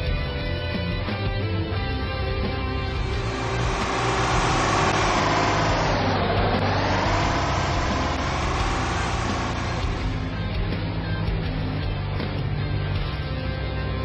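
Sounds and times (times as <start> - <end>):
vehicle engine running: 1.8 - 11.2.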